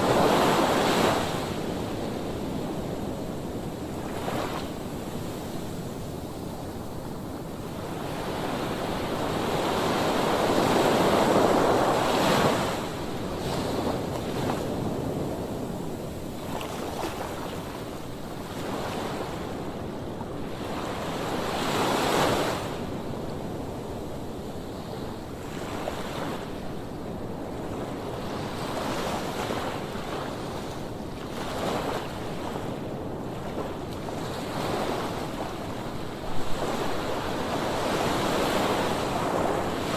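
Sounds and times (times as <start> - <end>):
heavy surf breaking on beach: 0.0 - 39.9.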